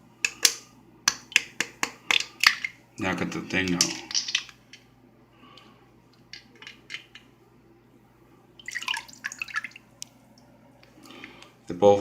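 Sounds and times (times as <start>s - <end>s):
water splashing and dripping: 8.6s - 9.8s.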